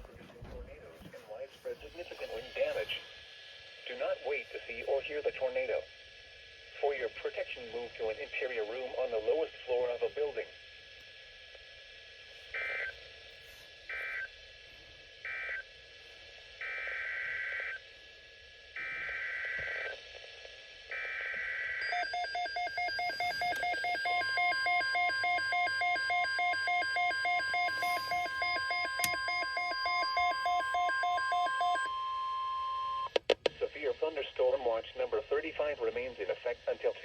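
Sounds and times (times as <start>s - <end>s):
steady warning alarm tone: 20.9s - 33.1s
rapid beeping: 21.8s - 31.9s.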